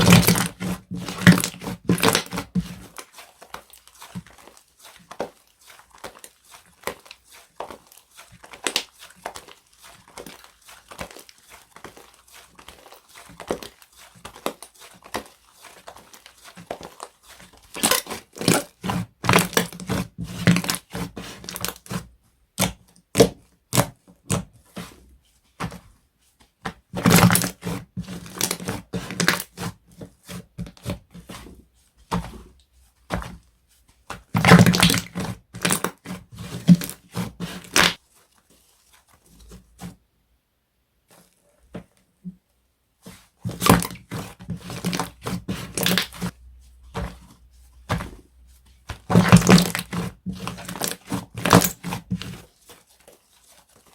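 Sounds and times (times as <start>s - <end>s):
slime squished by hand: 48.9s - 52.1s.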